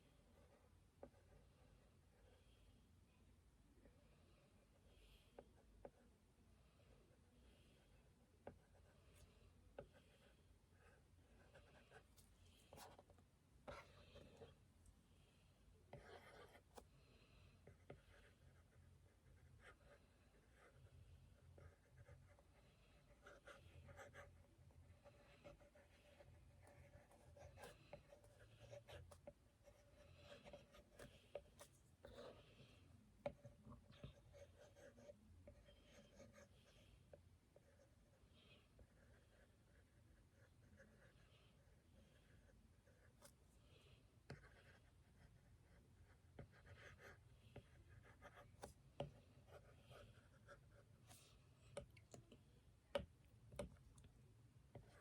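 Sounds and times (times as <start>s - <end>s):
faint steady hum: 0.0s - 55.0s
pen scratching on paper: 8.4s - 13.1s, 13.7s - 14.6s, 15.9s - 16.8s, 17.6s - 36.9s, 38.7s - 43.4s, 44.3s - 51.9s, 54.7s - 55.0s.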